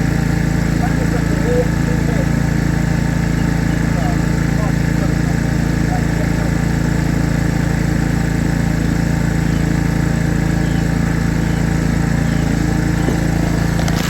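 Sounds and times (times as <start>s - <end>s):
engine idling: 0.0s - 14.0s.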